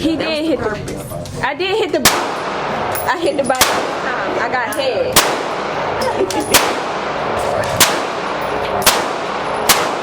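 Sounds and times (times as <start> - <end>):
gunshots with echo: 2.0 - 3.0, 3.6 - 4.4, 5.1 - 10.0.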